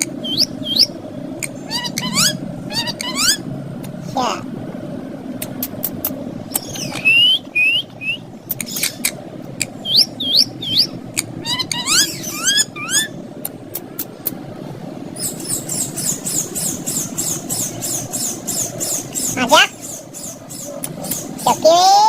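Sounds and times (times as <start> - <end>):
steady low hum: 0.0 - 22.0
parrot high chirps: 0.2 - 3.4, 9.8 - 13.2.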